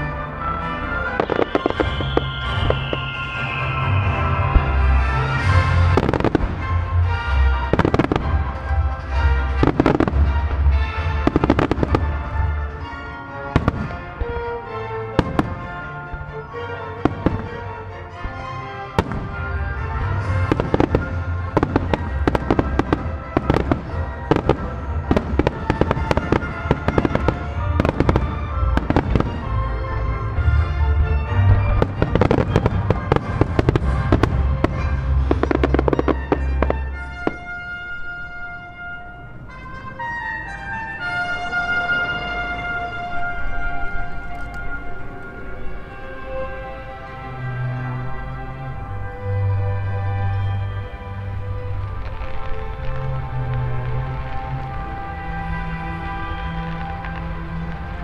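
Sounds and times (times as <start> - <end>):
recorded music: 0.0 - 58.0
fireworks booming and cracking: 1.0 - 38.9.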